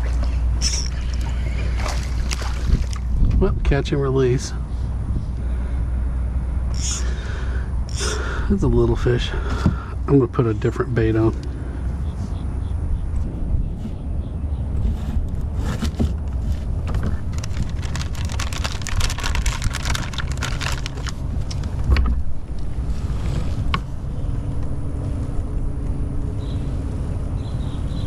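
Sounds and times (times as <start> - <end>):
wind on microphone: 0.6 - 3.9, 11.9 - 28.0
fishing tackle rustling and clicking: 15.8 - 22.6.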